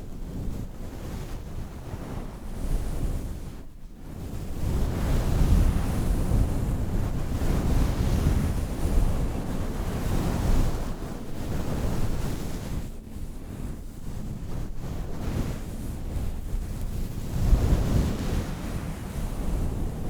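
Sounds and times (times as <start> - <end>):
wind buffeting microphone: 14.2 - 20.0.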